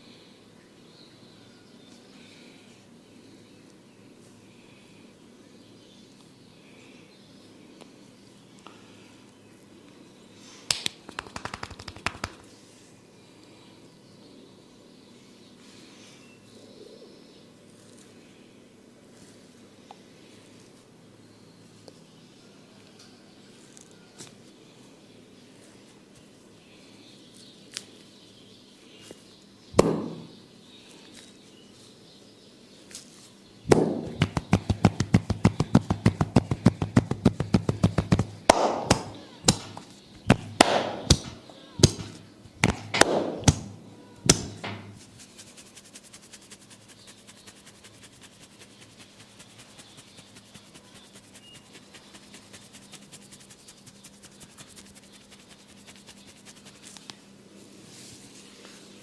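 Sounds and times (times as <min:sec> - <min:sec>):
hands tapping on a head: 0:10.7 - 0:12.5, 0:33.7 - 0:43.7, 0:44.3 - 0:44.9
slaps: 0:10.7 - 0:12.5, 0:29.8 - 0:30.3, 0:33.7 - 0:44.9.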